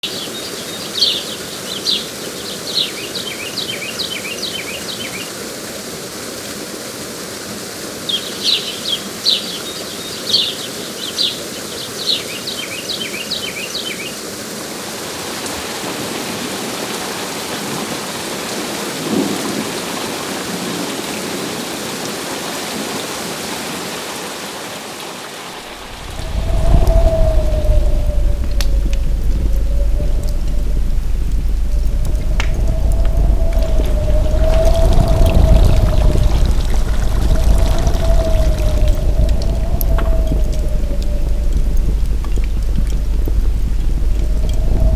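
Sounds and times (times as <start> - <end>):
steady rain: 12.5 - 44.9
deep rumble: 25.6 - 44.9.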